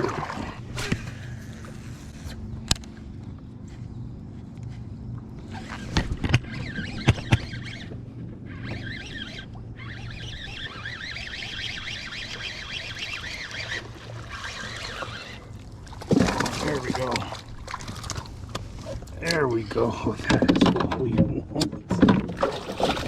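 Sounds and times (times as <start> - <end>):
low hum: 0.0 - 20.3
birds calling and chattering: 5.4 - 15.6.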